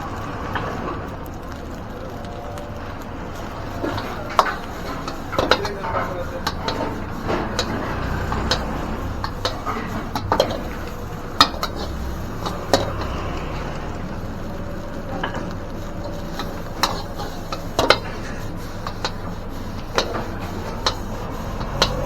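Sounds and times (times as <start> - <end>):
rice sizzling: 0.0 - 22.0
metal spatula clanking in a wok: 3.8 - 13.4, 15.2 - 22.0.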